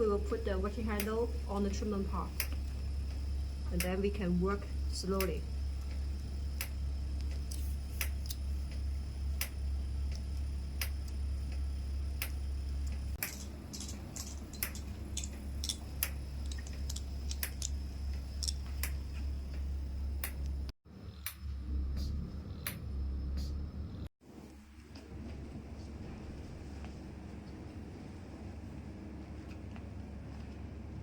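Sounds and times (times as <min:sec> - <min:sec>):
low pump hum: 0:00.0 - 0:31.0
sharp clicks: 0:02.3 - 0:02.6.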